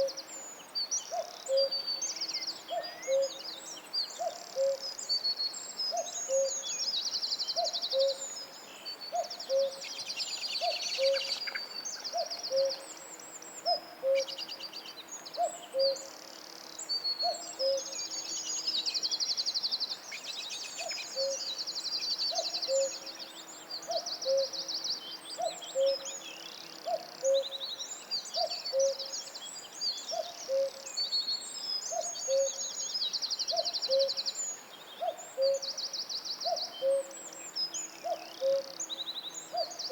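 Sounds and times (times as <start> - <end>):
birds chirping and trilling: 5.9 - 16.1, 16.9 - 39.9.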